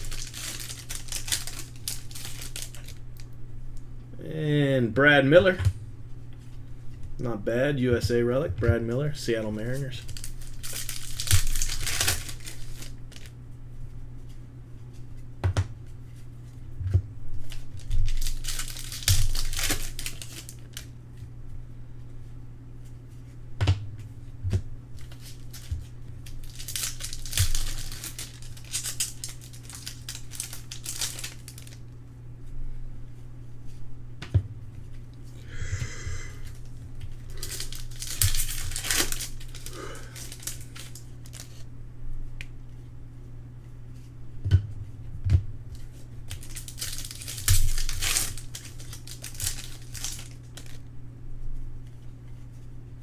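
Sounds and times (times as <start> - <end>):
wrappers tearing and crinkling: 0.0 - 3.3, 9.2 - 13.4, 17.4 - 20.9, 25.0 - 31.8, 36.4 - 41.6, 45.8 - 50.9
steady low hum: 0.0 - 53.0.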